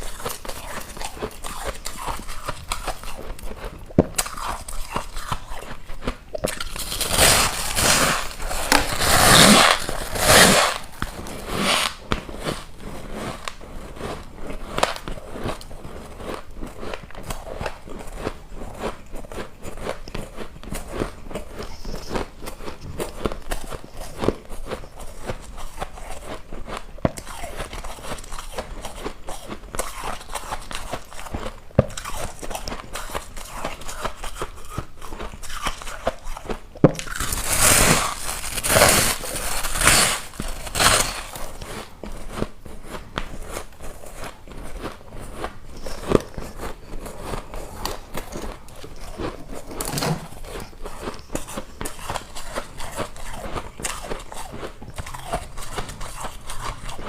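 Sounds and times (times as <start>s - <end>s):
person chewing ice: 0.0s - 57.0s.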